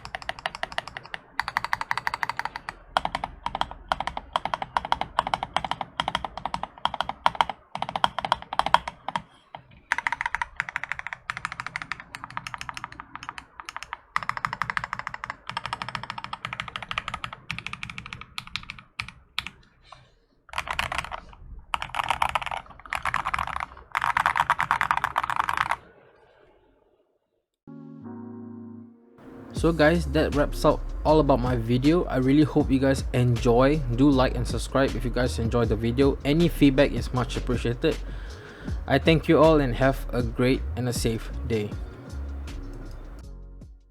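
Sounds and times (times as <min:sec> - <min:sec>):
typing on mechanical keyboard: 0:00.0 - 0:19.7, 0:20.5 - 0:25.8.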